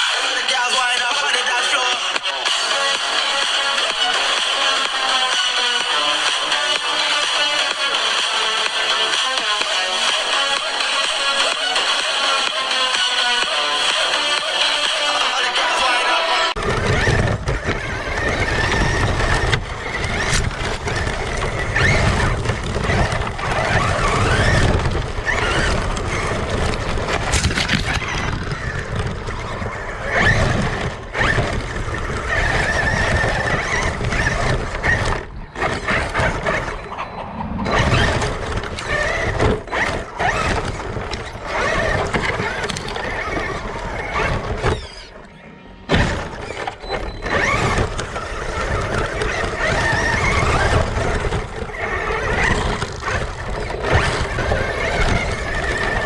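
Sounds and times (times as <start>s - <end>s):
music: 0.0s - 16.5s
drivetrain and tyres rumbling: 0.0s - 56.0s
electric motor whining: 1.5s - 56.0s.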